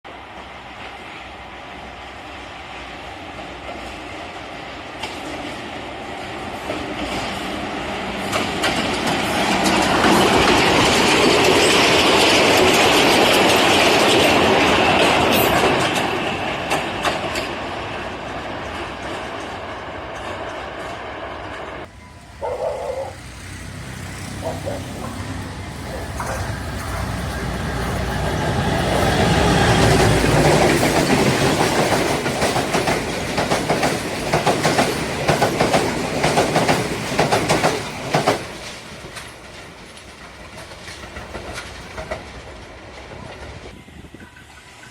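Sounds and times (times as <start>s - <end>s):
train passing: 0.1s - 44.9s
wheels clattering over rail joints: 8.2s - 20.7s, 21.9s - 44.9s.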